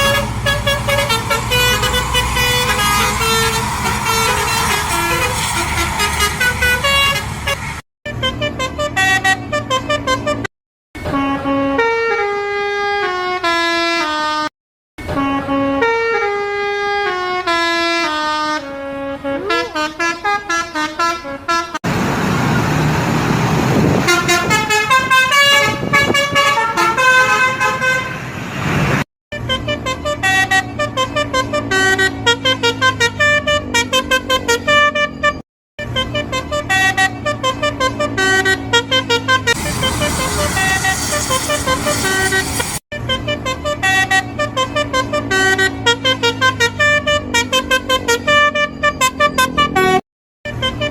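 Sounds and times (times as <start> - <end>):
rushing noise: 0.0 - 7.8, 39.5 - 42.8
multi-tone bus horns playing melodies: 0.0 - 21.8, 23.7 - 28.4, 29.3 - 50.9.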